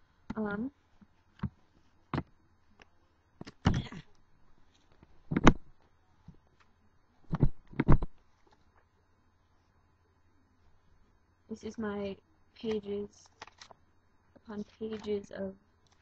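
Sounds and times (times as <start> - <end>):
knocks of objects set down: 5.3 - 5.7
papers rustling: 12.7 - 13.8, 14.6 - 15.3.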